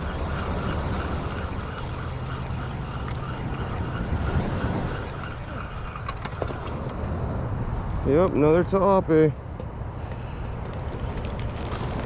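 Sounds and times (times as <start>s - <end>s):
wind on microphone: 0.0s - 9.2s.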